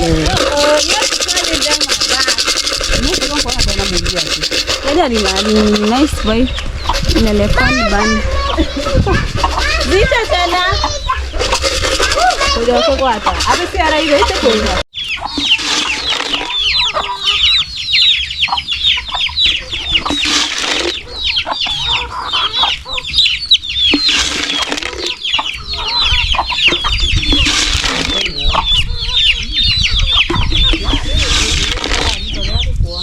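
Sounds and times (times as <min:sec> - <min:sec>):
rustling: 0:00.0 - 0:16.8, 0:20.0 - 0:21.1, 0:23.9 - 0:25.4, 0:27.2 - 0:28.3, 0:31.0 - 0:32.3
chicks cheeping: 0:04.5 - 0:14.3, 0:14.9 - 0:33.0.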